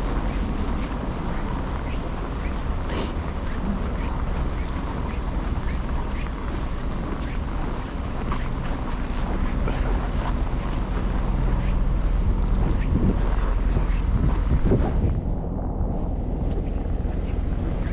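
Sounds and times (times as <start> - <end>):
wind buffeting microphone: 0.0 - 17.9.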